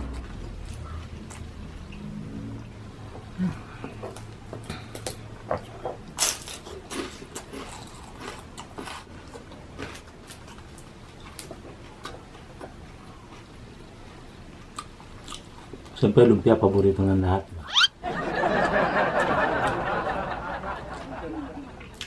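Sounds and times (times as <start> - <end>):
person chewing and smacking: 0.0 - 2.1, 3.1 - 13.6, 14.6 - 16.0.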